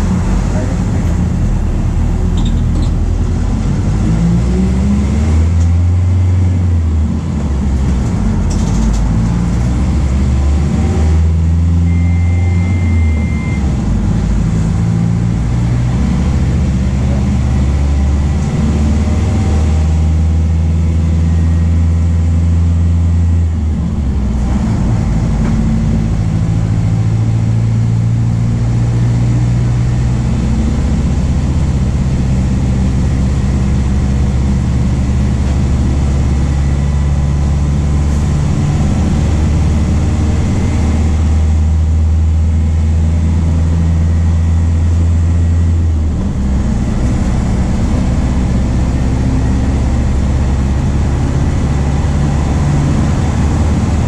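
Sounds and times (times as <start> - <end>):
bus diesel engine running: 0.0 - 54.0
short high beep: 2.4 - 2.7, 11.8 - 13.7.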